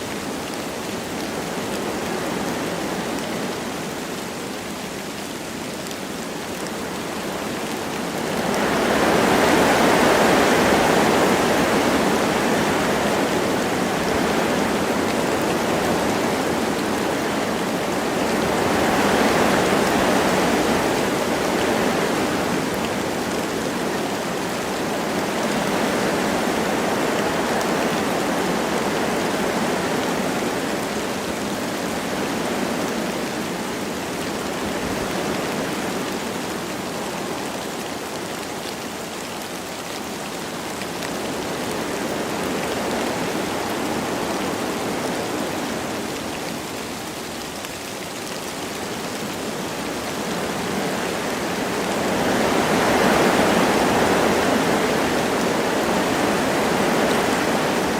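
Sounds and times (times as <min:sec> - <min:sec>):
light rain: 0:00.0 - 0:57.9
wind through trees: 0:00.0 - 0:57.9.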